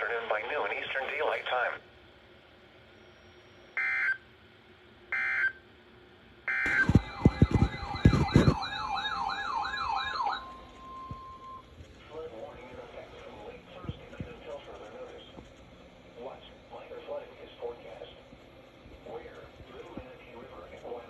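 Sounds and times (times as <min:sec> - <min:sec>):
data bursts: 0:06.5 - 0:11.6
warbling electronic siren tone: 0:06.5 - 0:11.6.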